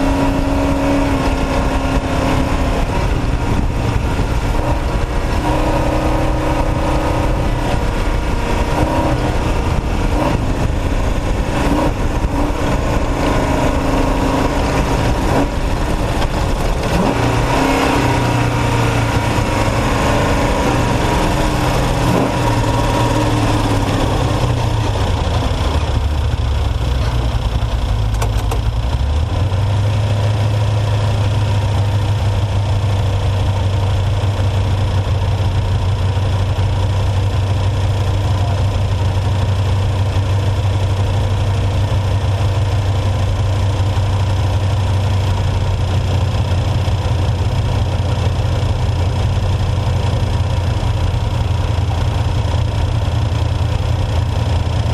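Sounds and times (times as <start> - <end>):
truck engine revving: 0.0 - 54.9
rattling noise: 23.6 - 29.2.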